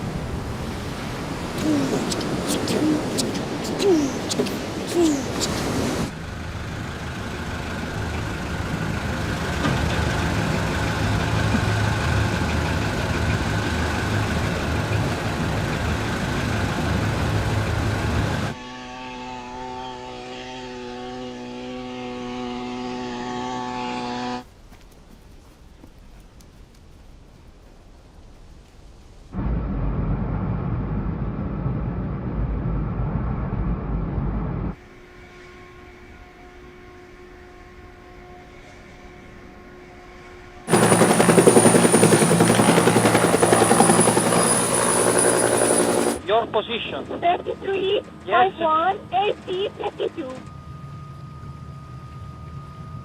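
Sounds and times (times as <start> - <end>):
engine droning: 0.0 - 24.5, 29.4 - 53.0
helicopter rotor chopping: 1.6 - 6.0, 40.7 - 50.5
turbine high whine: 29.4 - 53.0.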